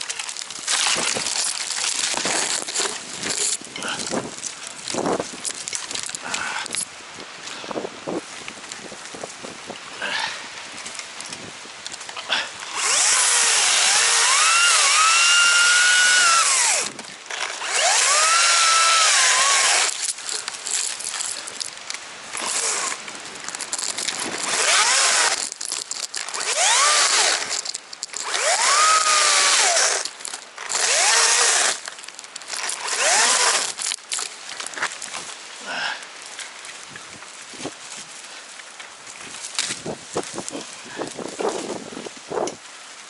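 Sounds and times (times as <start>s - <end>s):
chainsaw revving and cutting wood: 12.6s - 21.5s, 22.4s - 23.0s, 23.9s - 25.5s, 26.2s - 31.9s, 32.5s - 33.9s.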